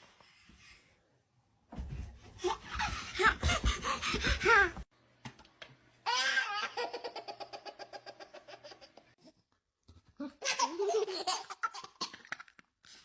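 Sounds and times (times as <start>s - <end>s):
baby laughing: 6.1s - 9.2s, 10.4s - 12.5s.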